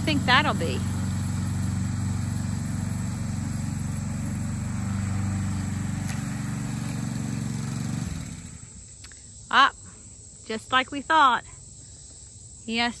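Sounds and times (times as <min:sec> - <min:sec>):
lawn mower engine running: 0:00.0 - 0:08.9.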